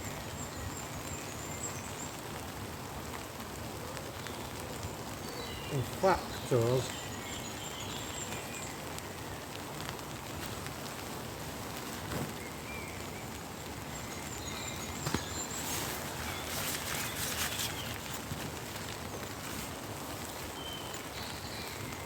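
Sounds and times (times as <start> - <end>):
heavy rain falling: 0.0 - 22.0
bird chirps: 5.2 - 8.8, 12.4 - 22.0
rustling and crackling: 8.2 - 22.0.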